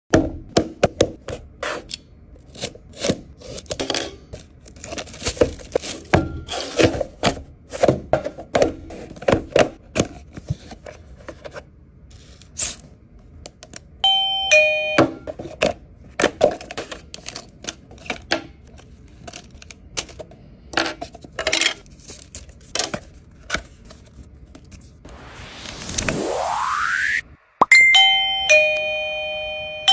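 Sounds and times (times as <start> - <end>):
ding-dong doorbell chime: 14.0 - 15.3, 27.7 - 29.9.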